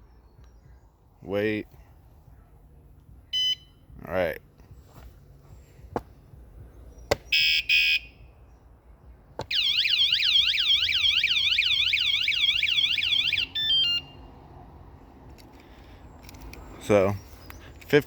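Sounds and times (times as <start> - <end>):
stepped alarm tones: 7.3 - 8.1, 9.5 - 14.1
alarm siren sweeps: 9.5 - 14.2.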